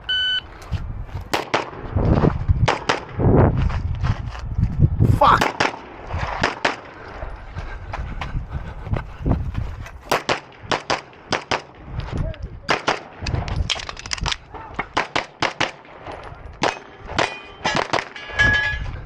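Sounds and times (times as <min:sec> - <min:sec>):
pistol shots: 0:01.3 - 0:01.8, 0:05.3 - 0:07.0, 0:10.1 - 0:11.8, 0:12.7 - 0:13.5, 0:14.7 - 0:18.2.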